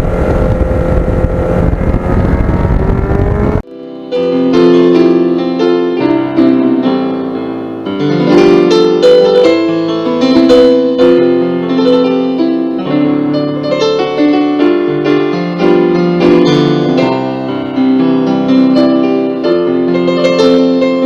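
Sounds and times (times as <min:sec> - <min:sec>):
engine and wind noise: 0:00.0 - 0:03.7
piano music: 0:03.6 - 0:21.0.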